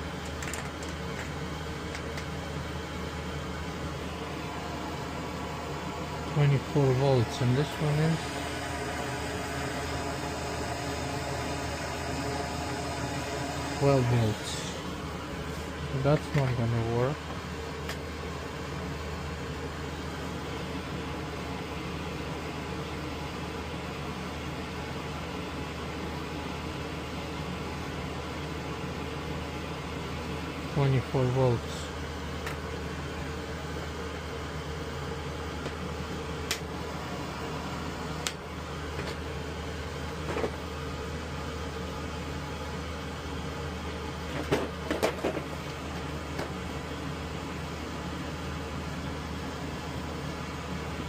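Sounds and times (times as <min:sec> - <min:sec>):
steady hum with hiss: 0:00.0 - 0:51.0
small parts clicking and tapping: 0:00.2 - 0:01.3.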